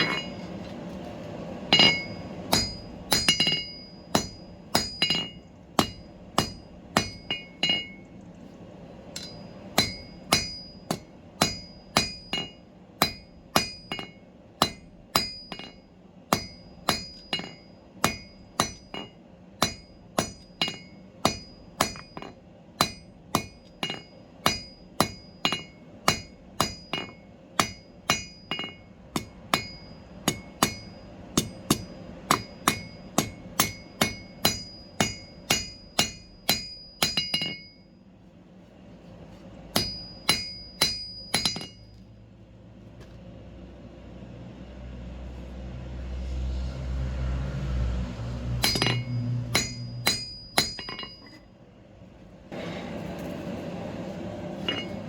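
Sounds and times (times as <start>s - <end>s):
hammer striking steel on anvil: 0.0s - 0.7s, 1.7s - 8.1s, 9.1s - 37.9s, 39.7s - 42.0s, 48.5s - 51.5s, 54.6s - 55.0s.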